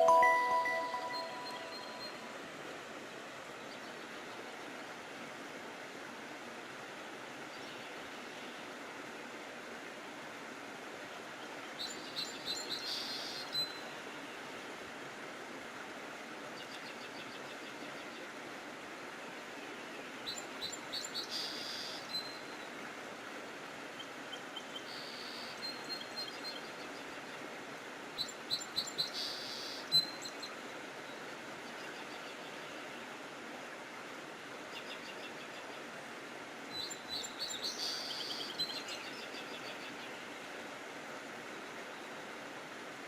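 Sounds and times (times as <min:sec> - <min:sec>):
steady background hiss: 0:00.0 - 0:43.0.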